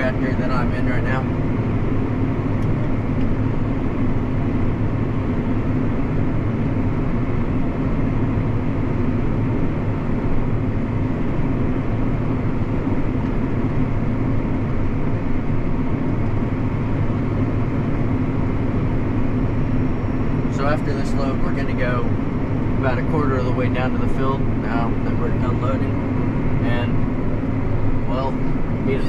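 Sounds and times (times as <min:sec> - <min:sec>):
tractor diesel engine drone: 0:00.0 - 0:29.0.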